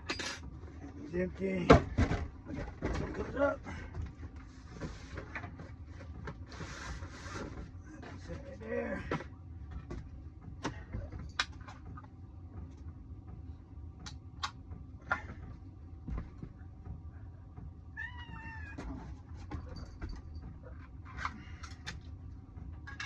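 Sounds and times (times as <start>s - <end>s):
cat meowing: 18.0s - 18.9s.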